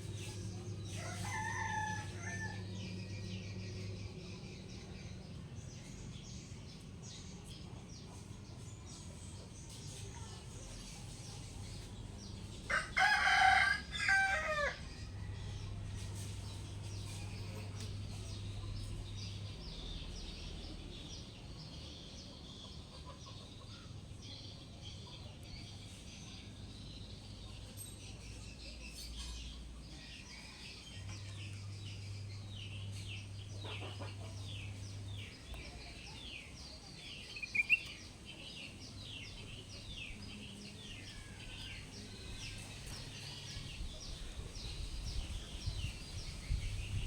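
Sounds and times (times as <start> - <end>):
rooster crowing: 0.9 - 2.8, 12.7 - 15.5
bulbul chirping: 37.3 - 38.0.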